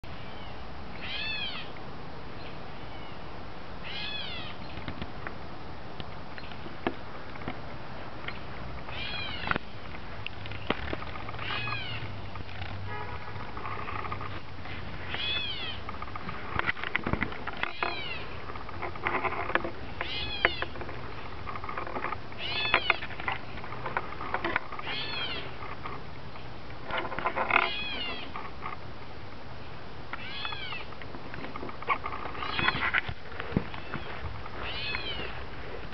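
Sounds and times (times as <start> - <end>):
bird calling: 0.1 - 1.8, 2.4 - 4.8, 8.2 - 9.9, 10.5 - 14.4, 15.0 - 16.0, 17.5 - 18.8, 19.9 - 21.4, 22.0 - 23.2, 24.7 - 25.7, 27.5 - 28.5, 33.6 - 35.4.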